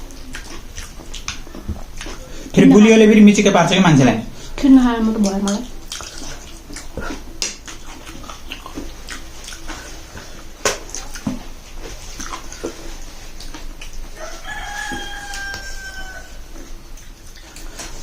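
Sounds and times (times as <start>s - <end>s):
rooster crowing: 14.1s - 16.6s.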